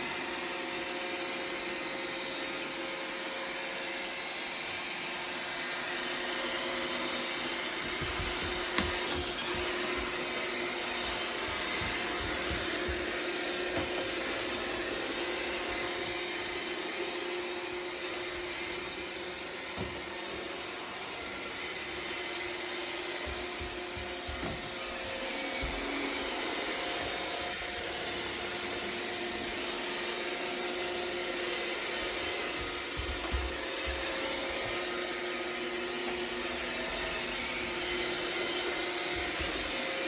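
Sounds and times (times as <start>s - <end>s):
robot vacuum whirring: 0.2s - 40.0s.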